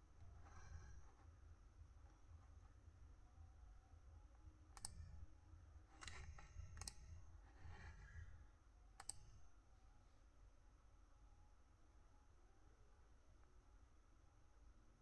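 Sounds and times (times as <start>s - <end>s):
low steady hum: 0.0s - 15.0s
computer clicks: 4.8s - 5.1s, 6.0s - 7.1s, 9.0s - 9.4s.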